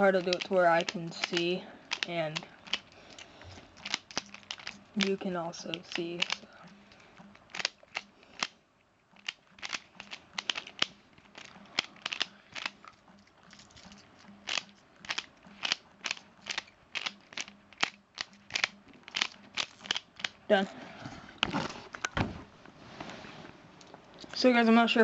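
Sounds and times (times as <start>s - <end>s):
plastic puzzle clicks: 0.1s - 6.5s, 7.3s - 8.6s, 9.2s - 20.4s.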